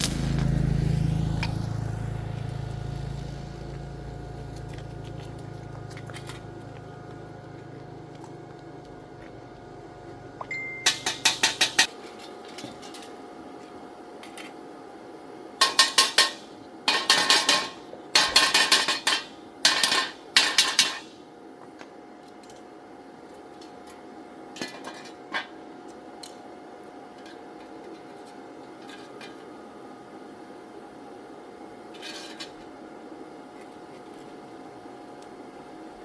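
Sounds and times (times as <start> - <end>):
faint hum: 0.0 - 12.2.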